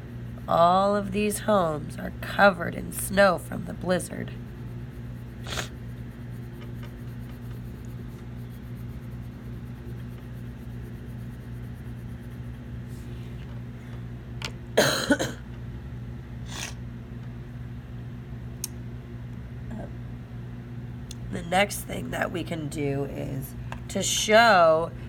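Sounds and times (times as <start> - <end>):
steady low hum: 0.0 - 25.0
woman coughing: 14.8 - 15.4.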